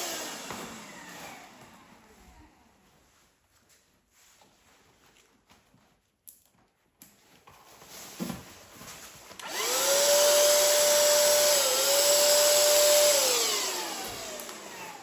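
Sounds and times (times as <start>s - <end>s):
paint sprayer motor whine: 0.0s - 2.1s, 9.4s - 15.0s.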